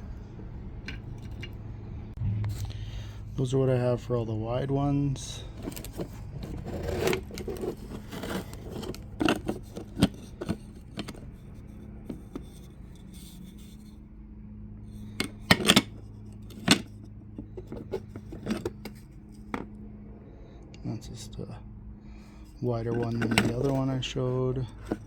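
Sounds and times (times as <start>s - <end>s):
steady low hum: 0.0s - 25.0s
abrasive discs clacking together: 5.5s - 11.3s, 15.2s - 19.7s, 22.9s - 23.9s, 24.7s - 25.0s.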